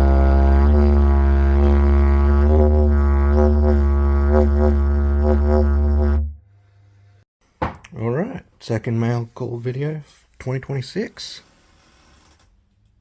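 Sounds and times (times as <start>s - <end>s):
didgeridoo drone: 0.0s - 6.4s.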